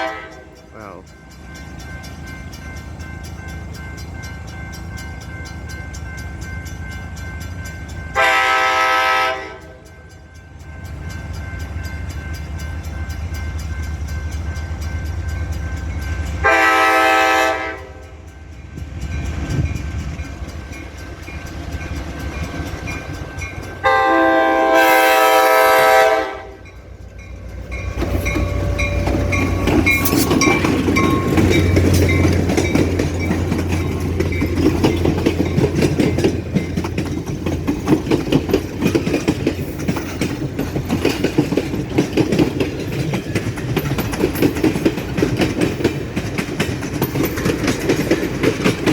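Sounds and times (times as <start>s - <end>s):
locomotive air horn blasts: 0.0s - 0.5s, 8.2s - 9.8s, 16.4s - 18.2s, 23.8s - 26.6s
locomotive engine rumbling: 0.0s - 48.9s
train wheels rattling over rail joints: 0.0s - 48.9s.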